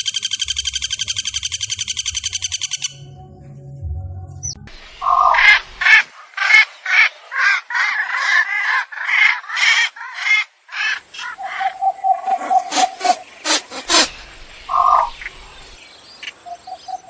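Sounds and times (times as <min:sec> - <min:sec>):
bird raspy calls: 0:05.0 - 0:17.0.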